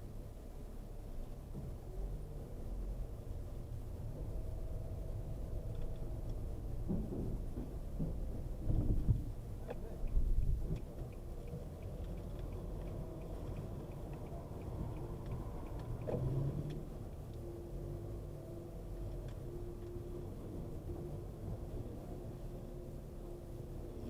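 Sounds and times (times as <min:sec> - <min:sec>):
car engine rumble: 0:00.0 - 0:24.0
light clicks and ticks: 0:05.2 - 0:06.5, 0:08.8 - 0:17.5, 0:18.9 - 0:20.2.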